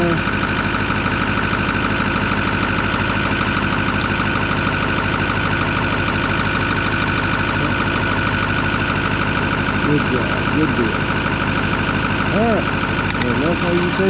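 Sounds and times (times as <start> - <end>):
diesel engine idling: 0.0 - 14.0.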